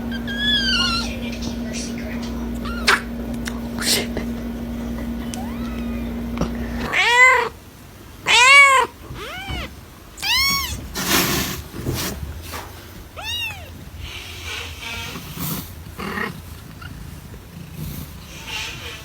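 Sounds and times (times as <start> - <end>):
cat meowing: 0.0 - 1.2, 2.4 - 3.2, 5.2 - 7.6, 8.2 - 10.9, 13.2 - 13.8.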